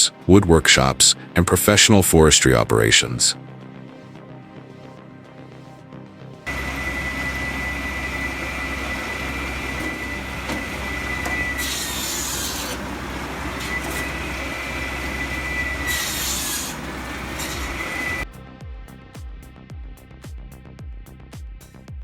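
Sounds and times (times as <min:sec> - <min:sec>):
circular saw blade whining: 0:06.5 - 0:18.2
saw cutting into log: 0:06.5 - 0:18.2
tractor engine hum: 0:06.5 - 0:18.2.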